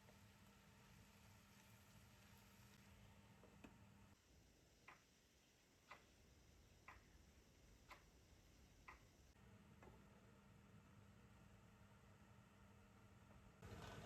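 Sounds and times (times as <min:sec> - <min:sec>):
faint ticks: 0:04.8 - 0:05.1, 0:05.8 - 0:06.2, 0:06.8 - 0:07.2, 0:07.8 - 0:08.2, 0:08.8 - 0:09.3.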